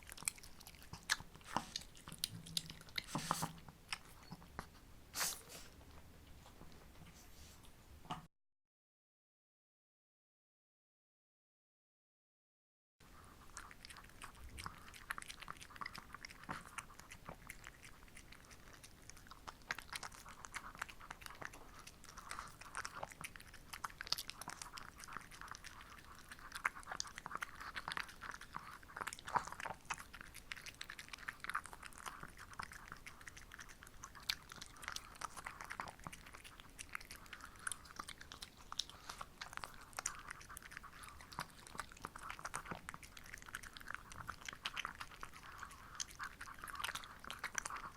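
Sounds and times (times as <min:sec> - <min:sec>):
dog chewing and crunching treat: 0:00.0 - 0:05.7, 0:13.2 - 0:47.9.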